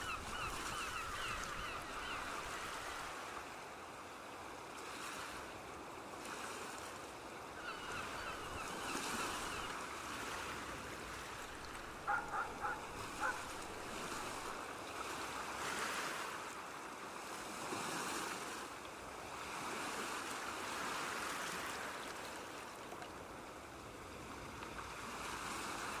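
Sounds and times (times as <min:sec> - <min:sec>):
bird calls: 0:00.0 - 0:02.8, 0:07.6 - 0:09.8, 0:11.6 - 0:14.6
waves washing on shore: 0:00.0 - 0:26.0.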